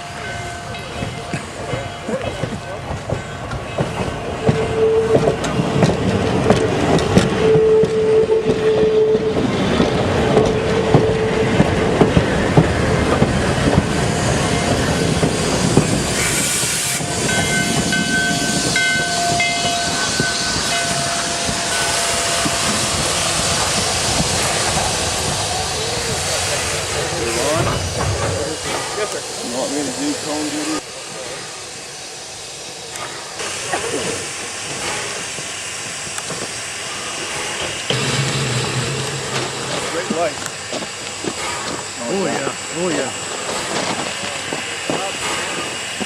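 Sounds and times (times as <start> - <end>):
train clanking and rail clatter: 0.0 - 31.8, 32.6 - 46.0
steam hiss: 0.0 - 46.0
steam whistle: 7.4 - 9.5.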